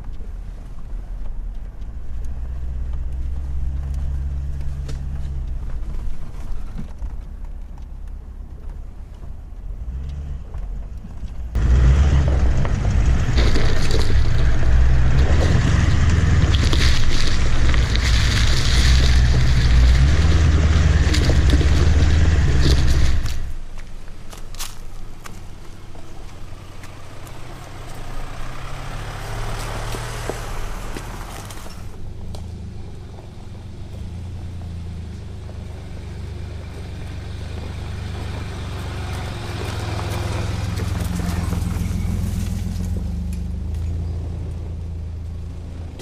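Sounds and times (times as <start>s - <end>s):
tyre noise: 0.0s - 46.0s
vehicle engine rumble: 0.0s - 46.0s.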